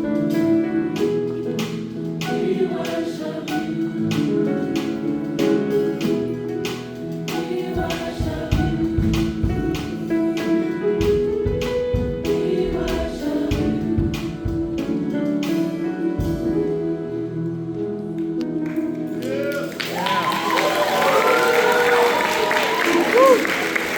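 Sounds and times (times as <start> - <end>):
choir singing held chords: 0.0 - 23.9
instrumental accompaniment: 0.0 - 23.9
steady sharp percussive strikes: 1.0 - 15.6.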